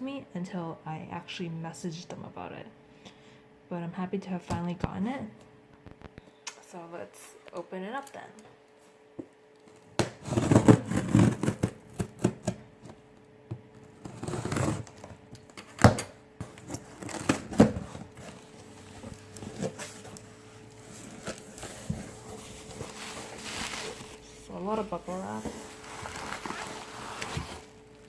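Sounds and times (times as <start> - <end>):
packaging rustle: 16.5 - 28.0.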